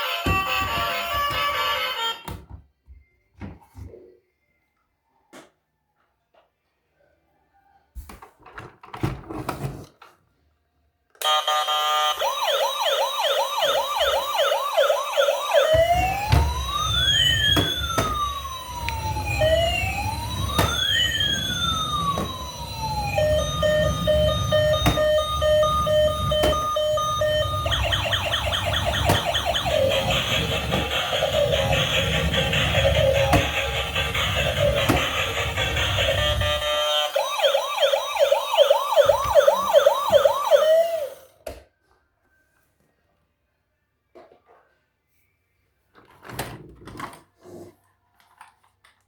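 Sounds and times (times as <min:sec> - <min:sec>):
toy electronic siren: 0:00.0 - 0:02.3, 0:11.2 - 0:41.4.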